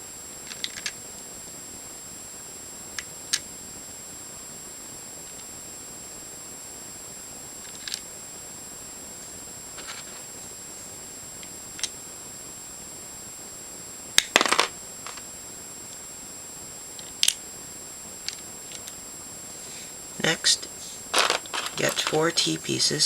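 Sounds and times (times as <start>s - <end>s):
plastic puzzle pieces clicking: 0.5s - 1.0s, 14.2s - 15.2s, 17.0s - 17.4s, 21.2s - 22.5s.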